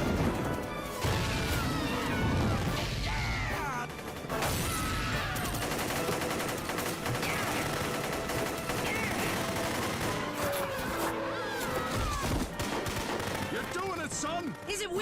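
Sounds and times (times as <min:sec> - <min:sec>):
background music: 0:00.0 - 0:15.0
cartoon gunfire: 0:01.0 - 0:10.3.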